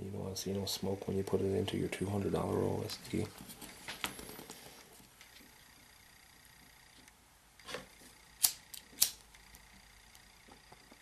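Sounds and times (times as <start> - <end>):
soft brushing: 2.8 - 5.4.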